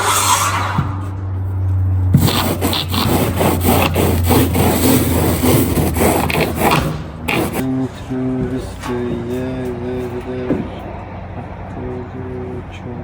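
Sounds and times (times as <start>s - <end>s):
sawing strokes: 0.0s - 7.7s
steady low hum: 0.0s - 13.0s.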